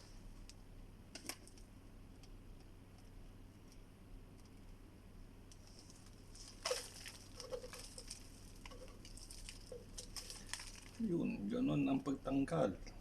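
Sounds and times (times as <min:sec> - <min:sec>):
plastic parts clicking and rattling: 0:05.5 - 0:11.0.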